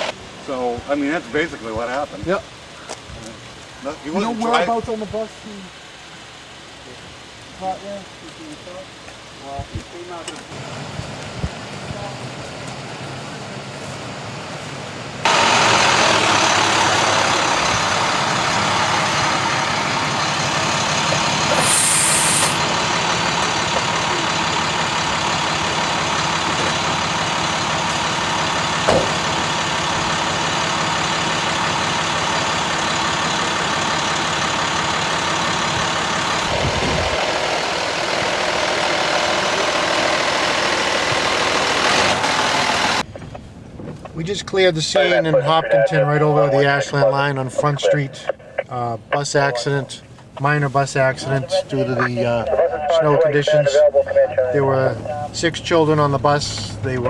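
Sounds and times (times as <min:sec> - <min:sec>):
truck engine and road noise: 0:00.0 - 0:57.0
short high hiss: 0:21.5 - 0:22.6.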